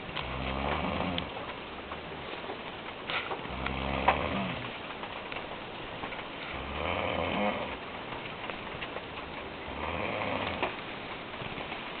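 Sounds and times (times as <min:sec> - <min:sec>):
man snoring: 0:03.6 - 0:04.6, 0:06.6 - 0:07.7, 0:09.7 - 0:10.6.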